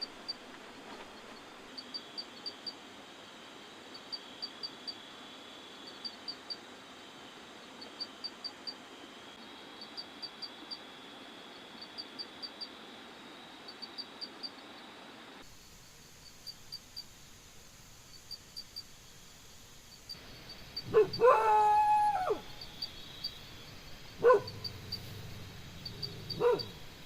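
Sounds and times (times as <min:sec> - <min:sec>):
night insects chirping: 0:00.0 - 0:27.0
dog yelping and whining: 0:26.4 - 0:26.7.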